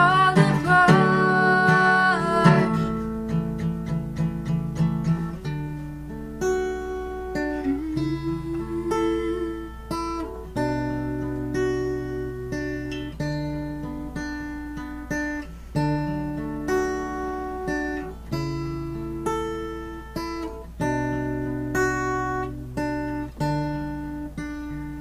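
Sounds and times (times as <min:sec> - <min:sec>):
acoustic guitar strumming: 0:00.0 - 0:25.0.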